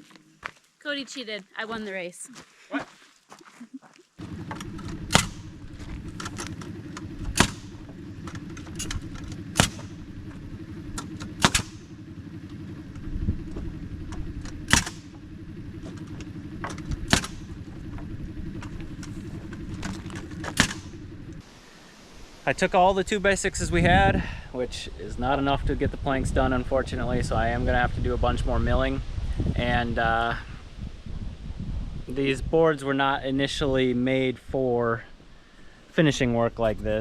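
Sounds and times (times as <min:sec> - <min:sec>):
engine running: 0:04.2 - 0:30.3, 0:35.1 - 0:37.0.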